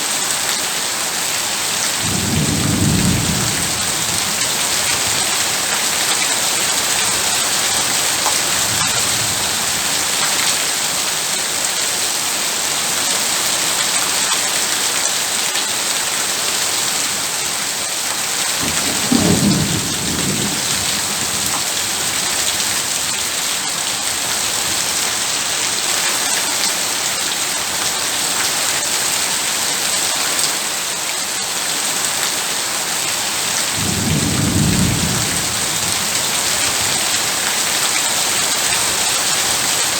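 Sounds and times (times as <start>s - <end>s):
heavy rain: 0.0s - 39.9s
low rumble of thunder: 2.0s - 5.6s, 18.6s - 23.1s, 33.7s - 37.4s.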